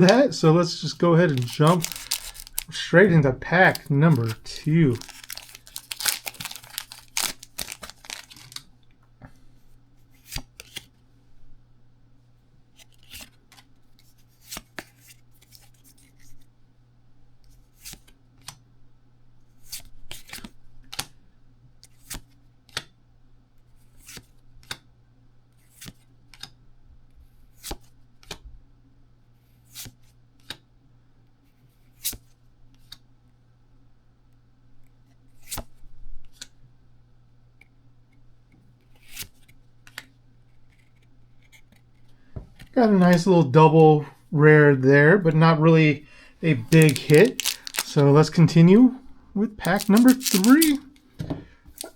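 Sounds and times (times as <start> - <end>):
cards flicking: 1.3 - 2.7, 46.6 - 48.1, 49.6 - 51.0
foil wrapper tearing: 1.3 - 2.8, 3.6 - 8.7, 46.6 - 48.2, 49.6 - 51.0.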